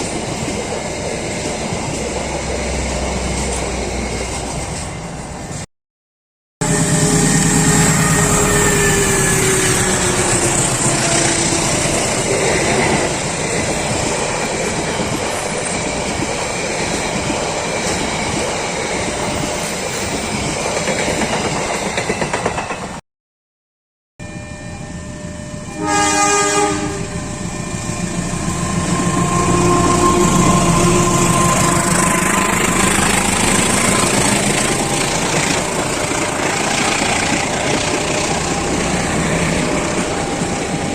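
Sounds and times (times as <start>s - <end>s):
train wheels rushing on rails: 0.0s - 5.6s, 6.6s - 23.0s, 25.4s - 40.9s
locomotive horn: 6.6s - 13.1s, 25.7s - 27.3s, 28.3s - 33.1s.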